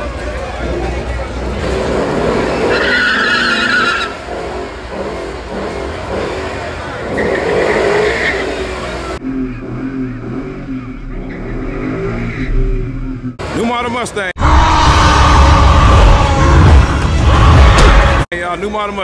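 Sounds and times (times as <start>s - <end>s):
tires squealing: 0.0s - 18.3s
car engine running: 4.0s - 13.6s.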